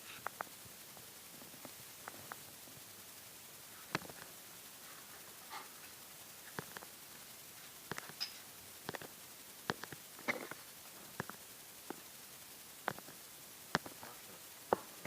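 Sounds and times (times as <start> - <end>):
sharp clicks and light knocks: 5.5 - 6.9, 7.9 - 12.1, 12.8 - 15.0.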